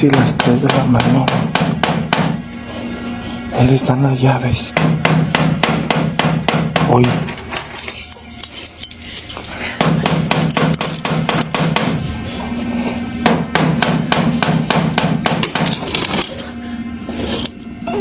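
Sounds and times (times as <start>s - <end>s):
loud rapid knocking on door: 0.0s - 2.4s, 4.7s - 7.2s, 9.8s - 11.9s, 13.2s - 15.7s.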